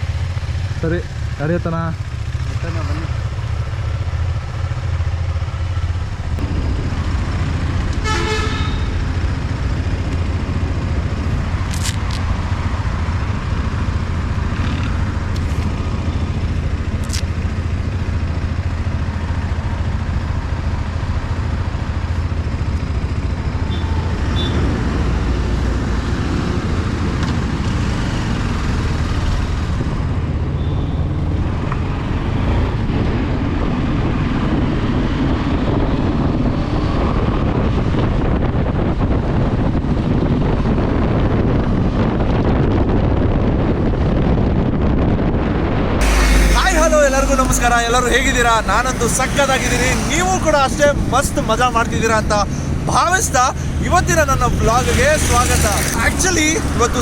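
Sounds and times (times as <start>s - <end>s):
vehicle rumbling along road: 0.0s - 57.0s
car horn toot: 8.0s - 9.0s, 23.6s - 24.8s, 46.0s - 47.3s.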